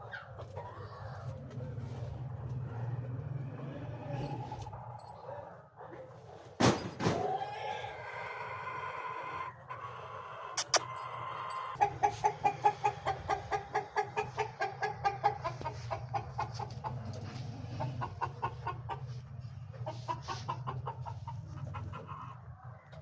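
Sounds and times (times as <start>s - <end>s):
bird clucking calls: 11.7s - 22.4s.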